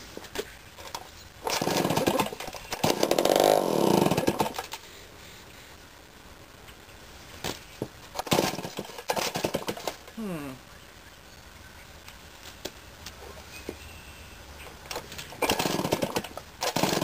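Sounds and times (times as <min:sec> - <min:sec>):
chainsaw pull-starting and running: 0:00.9 - 0:04.8, 0:08.2 - 0:10.0, 0:14.9 - 0:17.0.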